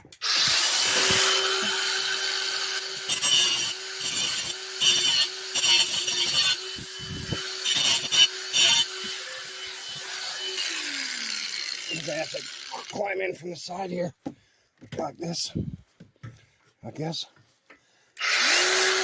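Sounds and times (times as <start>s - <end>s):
grinder cutting through steel: 0.0s - 13.2s, 18.2s - 19.0s.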